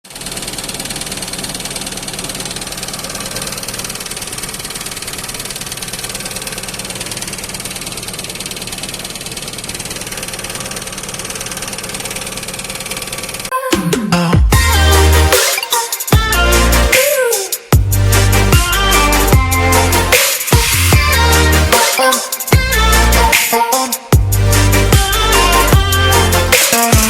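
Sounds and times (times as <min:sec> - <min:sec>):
diesel engine clattering: 0:00.1 - 0:13.5.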